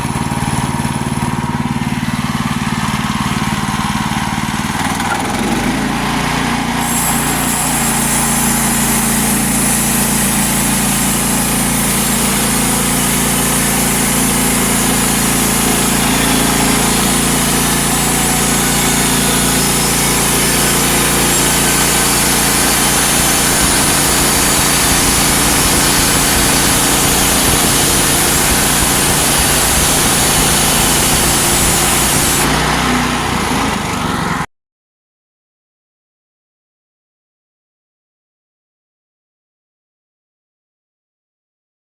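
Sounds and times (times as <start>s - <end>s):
sawmill gas engine running: 0.0s - 34.5s
band blade sawing log hiss: 6.8s - 32.5s.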